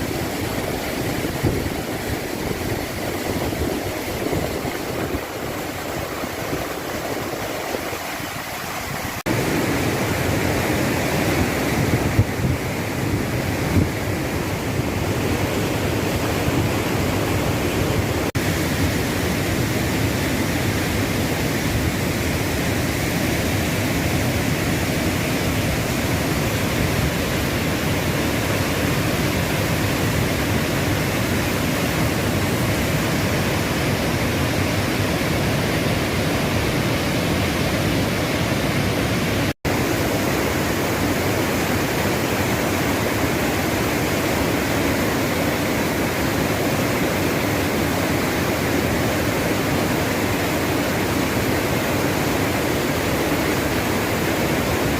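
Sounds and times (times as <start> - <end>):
waterfall rushing: 0.0 - 54.9.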